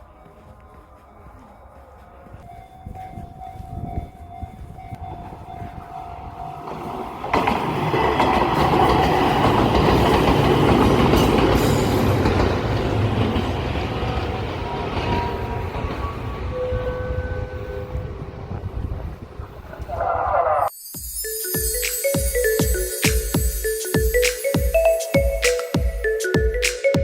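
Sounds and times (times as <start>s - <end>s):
steady warning tone: 0.0s - 7.4s, 14.0s - 26.6s
train wheels on rails: 0.0s - 20.0s.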